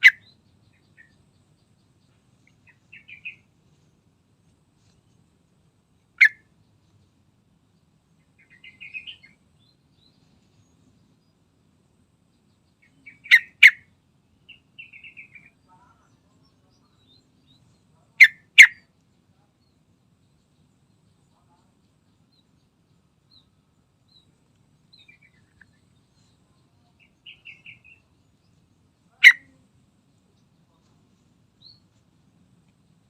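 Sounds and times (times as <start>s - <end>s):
bird chattering: 0.0s - 1.2s, 2.4s - 3.5s, 6.2s - 6.5s, 8.4s - 9.3s, 12.8s - 13.9s, 14.5s - 16.1s, 18.1s - 18.8s, 27.0s - 28.0s, 29.1s - 29.6s
bulbul calling: 0.0s - 3.5s, 6.2s - 6.5s, 8.4s - 9.4s, 12.8s - 13.9s, 14.5s - 16.1s, 17.1s - 18.9s, 26.6s - 28.1s, 29.0s - 29.7s.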